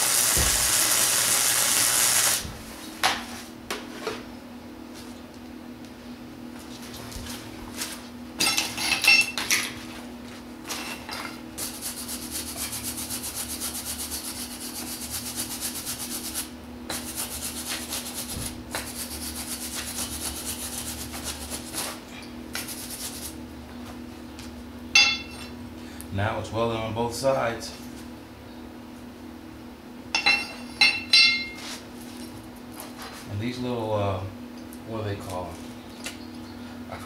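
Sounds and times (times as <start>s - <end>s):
welder arc crackling: 0.0s - 2.6s
steady low hum: 0.0s - 37.0s.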